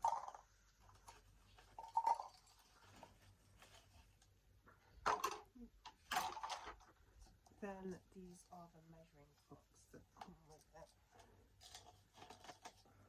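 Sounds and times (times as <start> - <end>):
plastic packaging rustling: 10.5 - 13.0.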